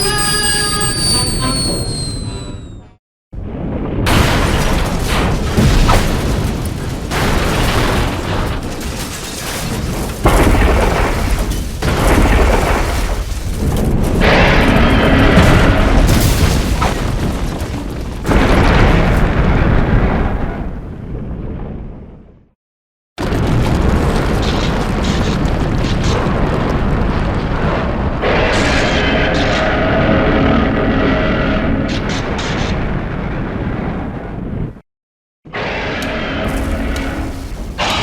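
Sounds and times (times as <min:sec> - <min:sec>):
loud rumbling booms: 0:03.4 - 0:22.4, 0:23.2 - 0:30.6.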